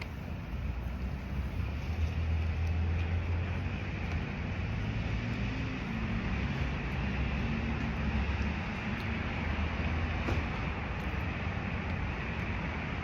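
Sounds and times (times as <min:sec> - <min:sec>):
engine rumble: 0:00.0 - 0:13.0
tyre and road noise: 0:00.0 - 0:13.0
vehicles passing: 0:00.0 - 0:13.0.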